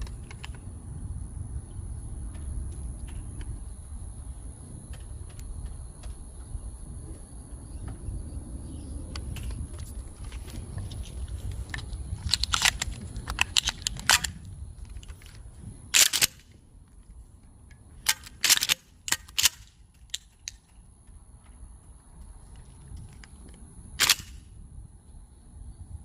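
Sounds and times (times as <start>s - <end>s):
shotgun action clacking: 11.7s - 16.5s, 18.0s - 20.7s, 24.0s - 24.4s.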